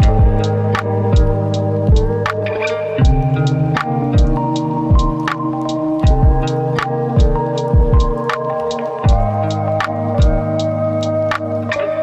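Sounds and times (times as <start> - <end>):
electronic kick drums: 0.0 - 2.3, 3.0 - 5.4, 6.0 - 6.6, 7.2 - 8.4, 9.0 - 10.7
held synth notes: 0.0 - 12.0.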